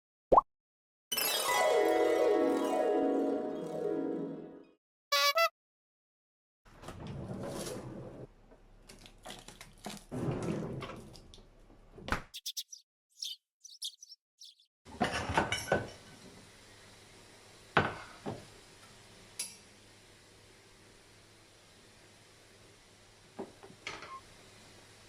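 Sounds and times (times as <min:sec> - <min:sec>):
high chirps: 0:12.4 - 0:14.7
dishes and utensils clattering: 0:15.0 - 0:16.0.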